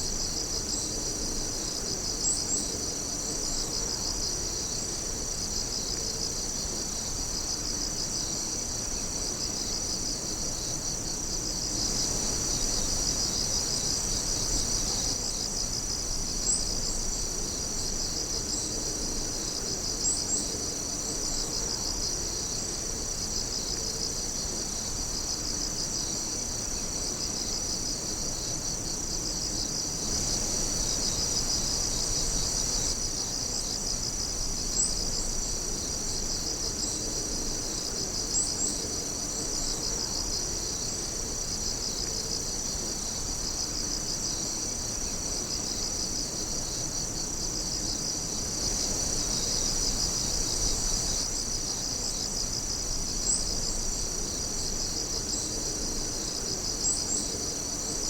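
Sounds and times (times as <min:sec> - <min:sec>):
night insects trilling: 0:00.0 - 0:58.0
sharp insect chirps: 0:29.6 - 0:33.8.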